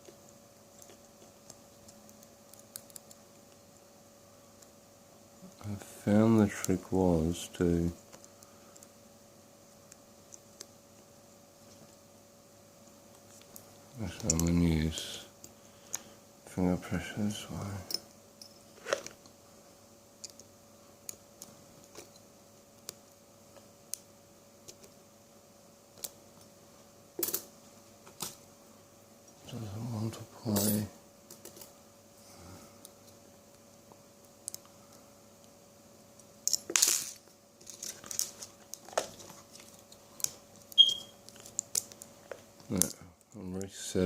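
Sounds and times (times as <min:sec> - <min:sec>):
faint steady hum: 0:00.0 - 0:44.0
short high metallic ping: 0:40.8 - 0:41.1.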